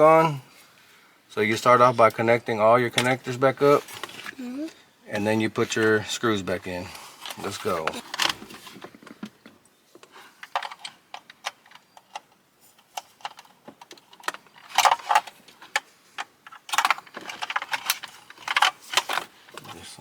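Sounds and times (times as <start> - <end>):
plastic connectors clicking and clattering: 10.4 - 19.8.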